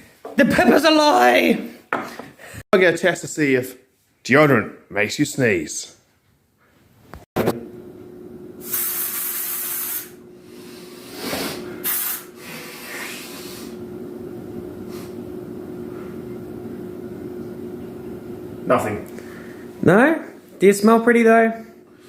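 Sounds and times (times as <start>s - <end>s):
aerosol can spraying: 8.6s - 10.2s, 11.2s - 12.3s.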